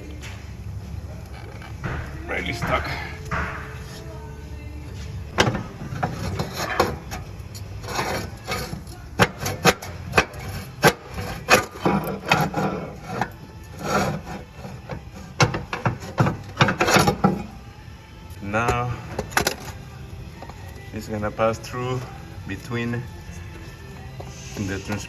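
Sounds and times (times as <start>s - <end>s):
metal knocks and scraping: 0.0s - 17.6s.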